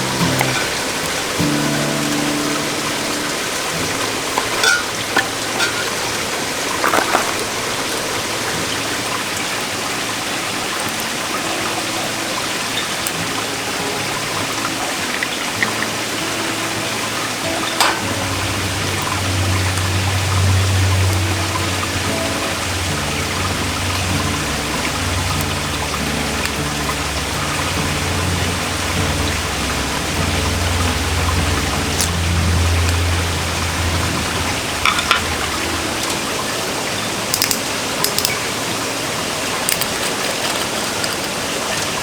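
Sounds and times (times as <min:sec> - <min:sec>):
stream rushing over rocks: 0:00.0 - 0:42.0.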